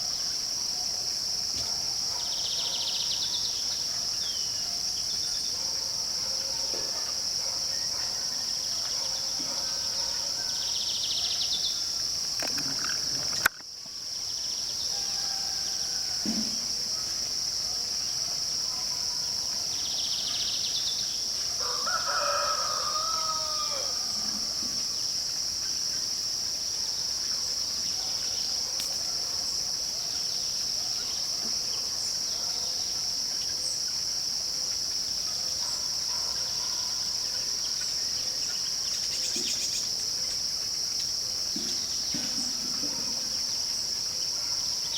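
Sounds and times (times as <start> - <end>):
rooster crowing: 14.9 - 16.3, 21.6 - 24.8.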